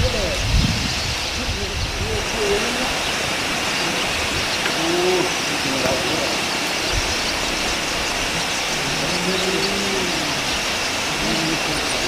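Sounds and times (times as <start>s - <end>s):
faint voice: 8.7s - 12.0s.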